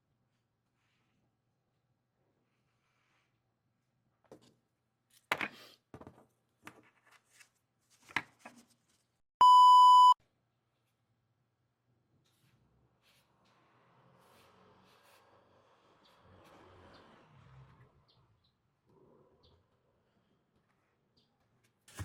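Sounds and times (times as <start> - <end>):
electronic beep: 9.4 - 10.2.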